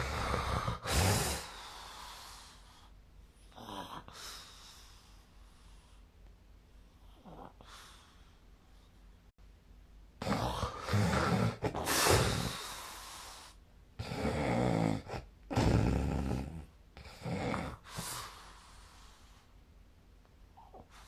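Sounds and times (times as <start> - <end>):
person snoring: 0.0 - 2.7, 10.2 - 13.0, 14.0 - 18.3.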